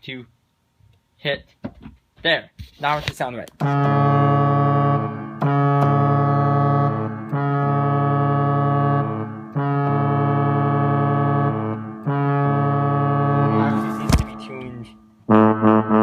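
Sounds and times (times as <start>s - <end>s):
keyboard ship horn blasts: 3.6s - 16.0s.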